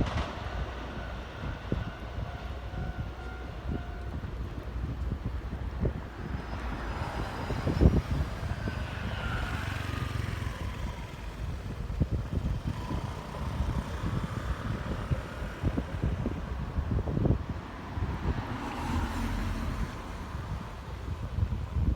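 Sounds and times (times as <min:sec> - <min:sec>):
electric train running: 0:00.0 - 0:15.4
wind buffeting microphone: 0:00.0 - 0:21.9.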